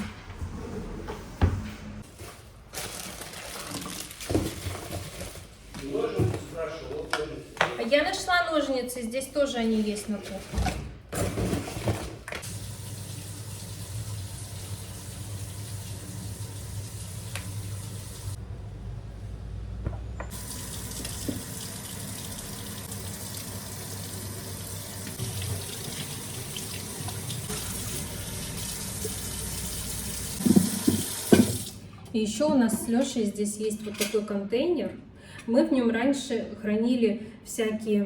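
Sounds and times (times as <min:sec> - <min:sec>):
tap water running into sink: 0:12.4 - 0:18.4, 0:20.3 - 0:31.8.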